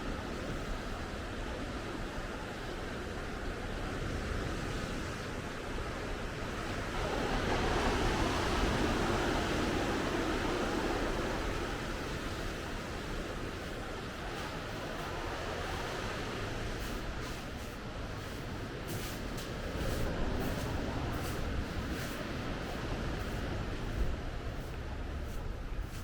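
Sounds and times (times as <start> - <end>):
ocean waves washing: 0.0 - 26.0
wave breaking: 6.7 - 26.0.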